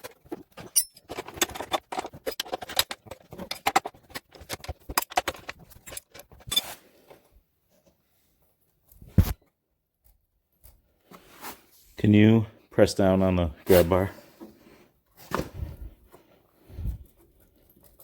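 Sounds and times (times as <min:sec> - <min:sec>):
metallic clinking of hand tools: 0:00.0 - 0:06.8.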